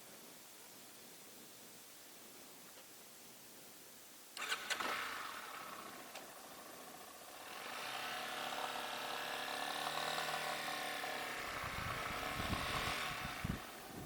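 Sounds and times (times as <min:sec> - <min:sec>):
motorcycle engine under throttle: 0:04.4 - 0:14.0.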